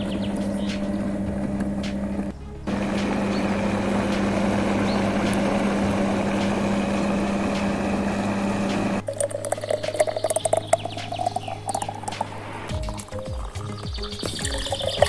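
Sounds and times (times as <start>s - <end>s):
blender running: 0.0s - 9.0s.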